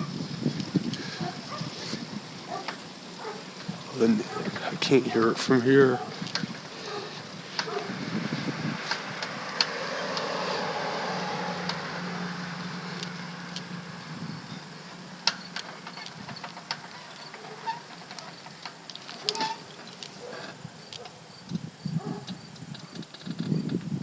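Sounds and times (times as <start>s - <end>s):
vehicle passing: 0.0s - 20.5s
sharp ticks: 12.9s - 13.7s.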